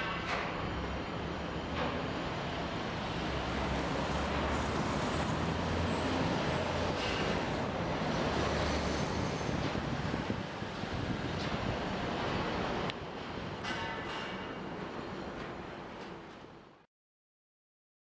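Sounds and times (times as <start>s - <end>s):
passing vehicles: 0.8s - 13.0s.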